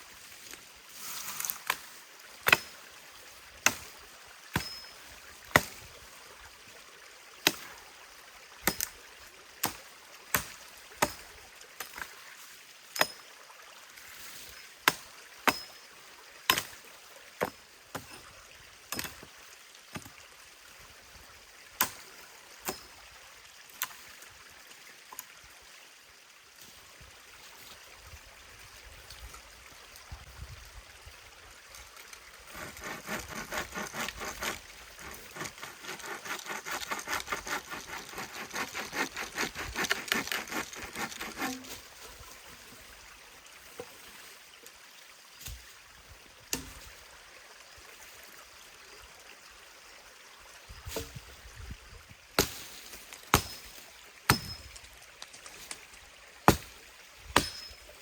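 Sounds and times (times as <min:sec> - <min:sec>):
stream rushing: 0:26.5 - 0:45.2
saw strokes through wood: 0:32.4 - 0:41.8.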